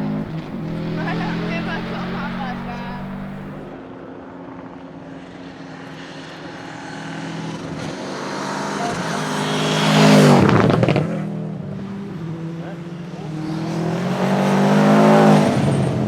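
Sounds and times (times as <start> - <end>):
rally car engine passing by: 0.0 - 3.7.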